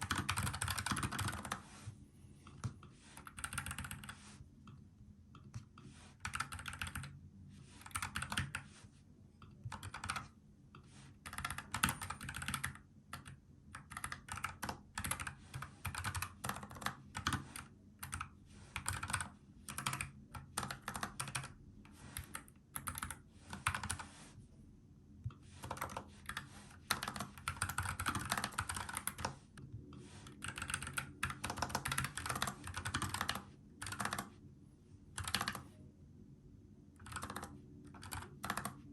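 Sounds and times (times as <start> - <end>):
mechanical keyboard typing: 0.0 - 1.6, 2.6 - 4.2, 5.4 - 7.2, 7.8 - 8.6, 9.6 - 10.3, 11.3 - 21.6, 22.2 - 24.0, 25.6 - 29.4, 30.3 - 34.3, 35.2 - 35.7, 37.0 - 38.9.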